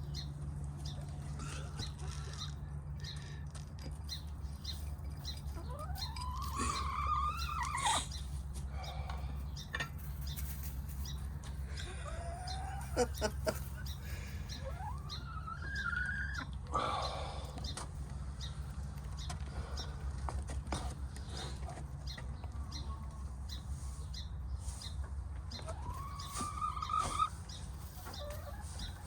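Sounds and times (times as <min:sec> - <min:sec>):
chickens calling: 0:00.0 - 0:29.0
steady low hum: 0:00.0 - 0:29.0.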